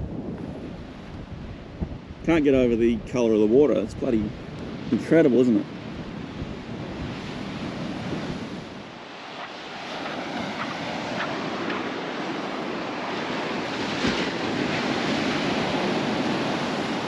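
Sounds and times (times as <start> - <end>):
wind buffeting microphone: 0.0 - 17.0
ocean surf breaking: 3.4 - 17.0.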